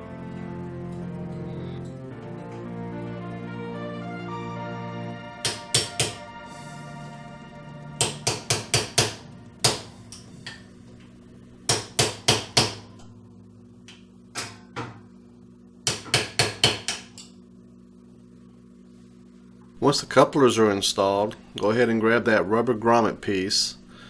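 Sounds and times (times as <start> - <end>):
hammer tapping on metal socket: 5.4 - 6.2.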